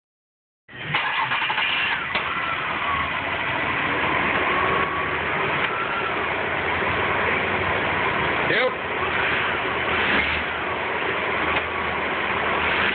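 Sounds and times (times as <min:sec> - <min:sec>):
car engine running: 0:00.7 - 0:12.9.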